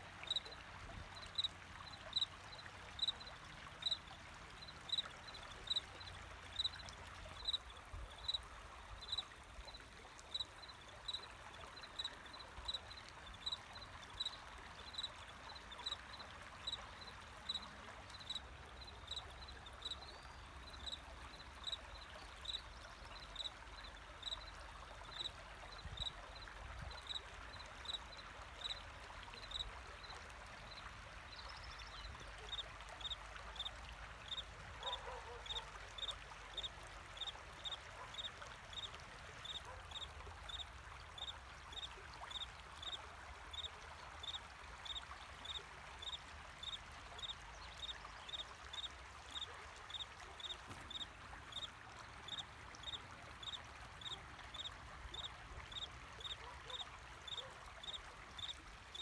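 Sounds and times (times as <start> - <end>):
trickle of running water: 0.0 - 59.0
cricket chirping: 42.8 - 48.9, 49.9 - 51.7, 52.3 - 56.4, 57.3 - 59.0.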